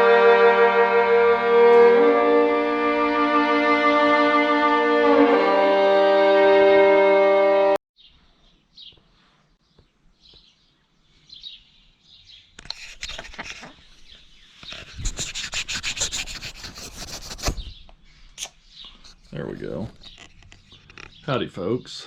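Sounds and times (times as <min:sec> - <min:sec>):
violin music: 0:00.0 - 0:07.8
rubbing and rasping strokes: 0:12.6 - 0:13.8, 0:14.6 - 0:17.7.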